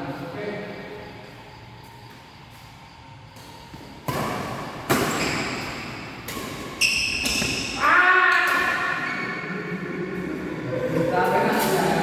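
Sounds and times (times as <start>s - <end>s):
racket striking shuttlecock: 3.4s - 9.1s
high squeak: 6.8s - 9.4s.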